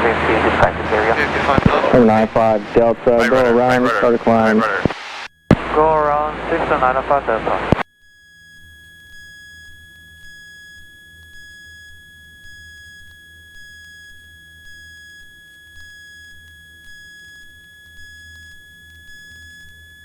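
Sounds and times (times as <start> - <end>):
low hum: 0.0 - 7.8.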